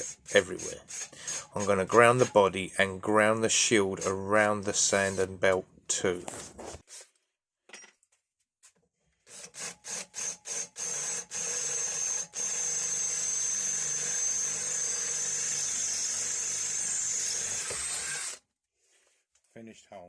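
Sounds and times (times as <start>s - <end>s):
power drill drilling metal: 0.0s - 2.5s, 9.3s - 18.4s.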